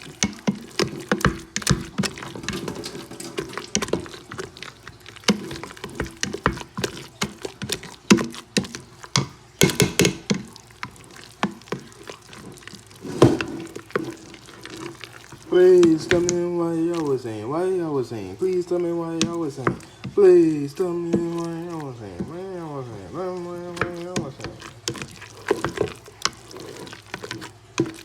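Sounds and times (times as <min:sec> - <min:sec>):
potatoes squishing: 0:00.0 - 0:28.0
utensil knocking against pot: 0:00.1 - 0:10.6, 0:15.6 - 0:17.1, 0:18.4 - 0:20.3.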